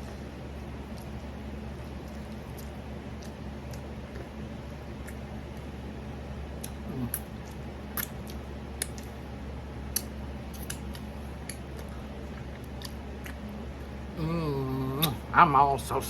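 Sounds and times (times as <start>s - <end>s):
steady low hum: 0.0s - 16.0s
wet mouth smacks while eating: 5.0s - 5.7s, 6.6s - 9.2s, 9.9s - 13.4s.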